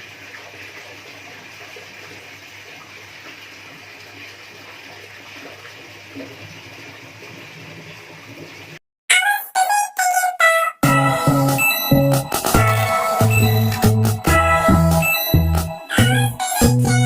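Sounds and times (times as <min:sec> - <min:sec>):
music: 0:10.8 - 0:17.0.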